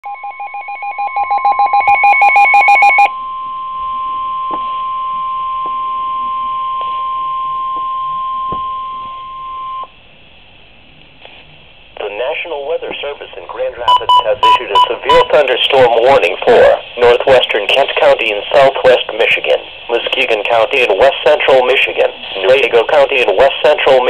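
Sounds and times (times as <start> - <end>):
rapid alternating beeping: 0.0 - 3.1, 13.8 - 16.7
steady high alarm tone: 0.0 - 9.9, 13.9 - 16.7.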